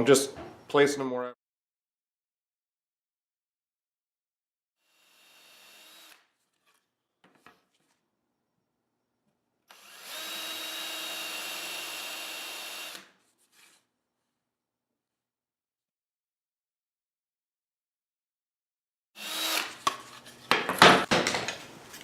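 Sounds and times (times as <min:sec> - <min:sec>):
power drill whining: 0:04.9 - 0:06.3, 0:09.7 - 0:13.1, 0:19.2 - 0:19.8.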